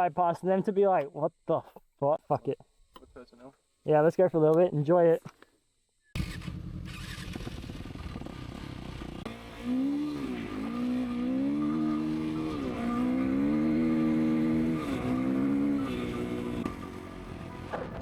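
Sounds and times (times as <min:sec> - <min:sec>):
motorcycle engine accelerating: 0:06.2 - 0:18.0.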